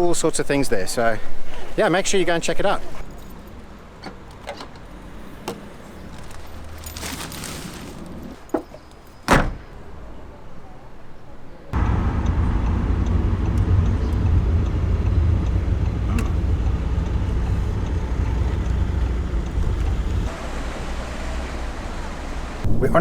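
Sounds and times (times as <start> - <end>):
car engine and road rumble: 2.8 - 8.7, 11.8 - 22.7.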